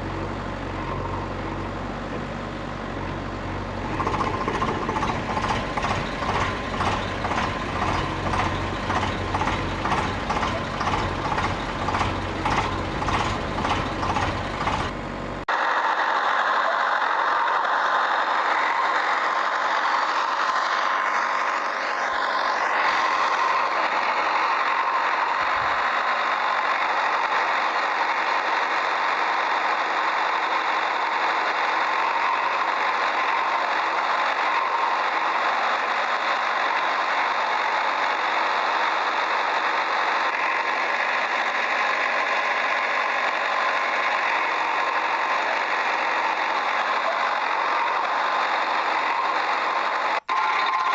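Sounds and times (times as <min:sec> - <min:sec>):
machine running: 0:00.0 - 0:15.5.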